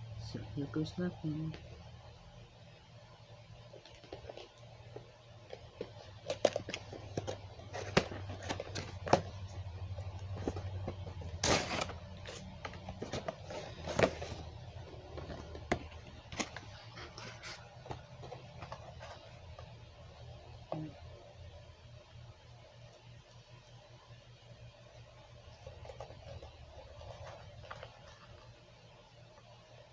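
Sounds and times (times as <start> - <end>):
cardboard packaging handled: 3.8 - 19.7.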